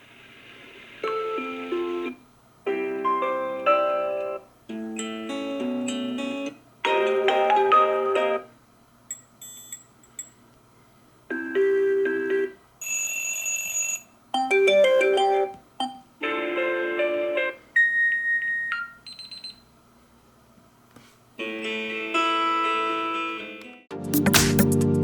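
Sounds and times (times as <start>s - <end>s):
melodic alarm tones: 14.4s - 16.1s.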